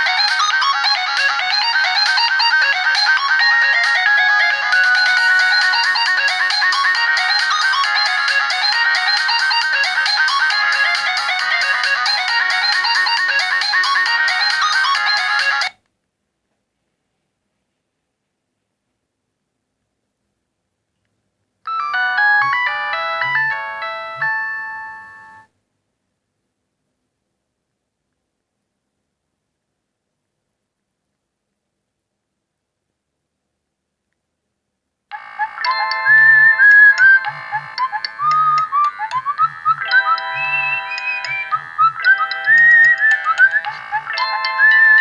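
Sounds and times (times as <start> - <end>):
bright phone ringtone melody: 0.0 - 15.7, 21.7 - 25.5, 35.1 - 45.0.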